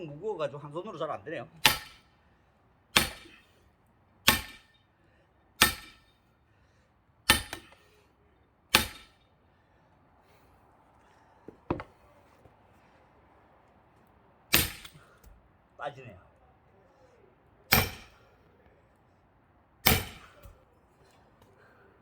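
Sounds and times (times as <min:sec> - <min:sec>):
hammer striking axe in log: 0:01.6 - 0:02.1, 0:03.0 - 0:03.4, 0:04.3 - 0:04.7, 0:05.6 - 0:06.0, 0:07.3 - 0:07.8, 0:08.7 - 0:09.2, 0:11.5 - 0:11.9, 0:14.5 - 0:15.1, 0:17.7 - 0:18.2, 0:19.8 - 0:20.6.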